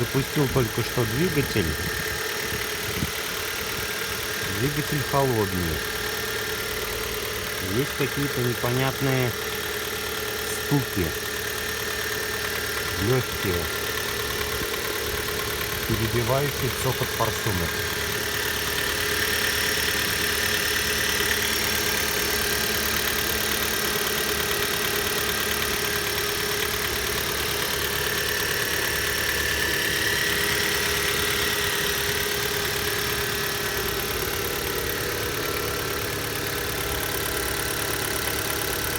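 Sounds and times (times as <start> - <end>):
car engine idling: 0.0 - 38.9
fuel injectors ticking: 0.0 - 38.9.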